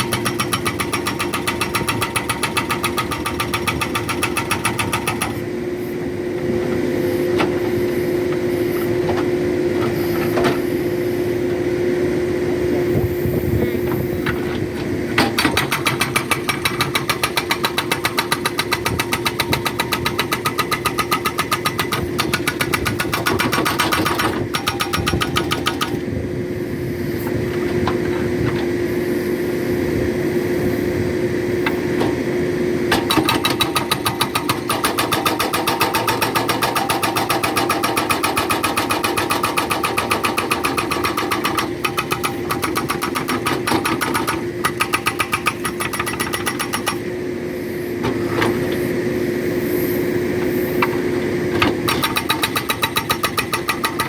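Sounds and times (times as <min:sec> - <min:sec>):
hydraulic rock breaker hammering: 0:00.0 - 0:05.5, 0:13.8 - 0:26.1, 0:32.9 - 0:47.1, 0:50.8 - 0:54.0
machine engine hum: 0:00.0 - 0:54.0.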